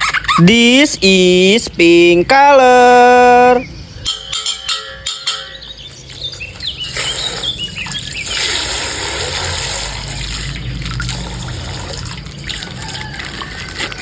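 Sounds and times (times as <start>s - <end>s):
plastic bag squeaking: 0.0s - 0.6s, 12.6s - 14.0s
water gushing and splashing: 5.9s - 14.0s.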